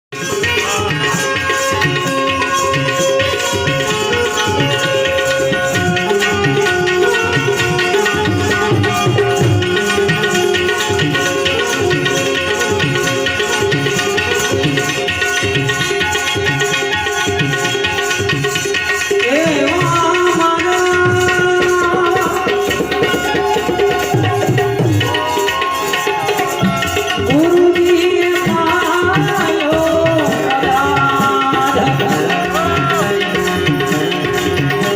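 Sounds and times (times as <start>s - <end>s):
harmonium held notes: 0.1s - 34.9s
tabla rhythm: 0.1s - 34.9s
person singing: 19.2s - 23.7s, 27.2s - 34.1s.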